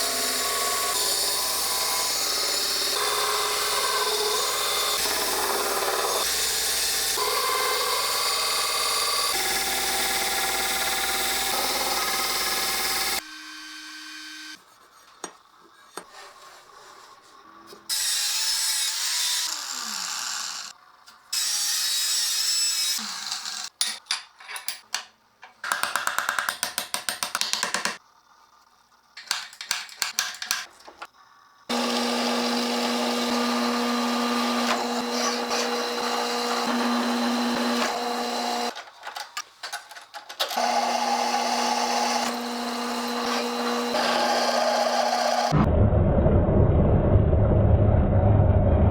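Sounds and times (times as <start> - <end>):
electric power tool humming: 0.0 - 14.6, 31.7 - 38.8, 40.6 - 45.6
grinding bursts: 31.7 - 38.8, 40.6 - 45.6
hand tool strokes: 34.0 - 45.4.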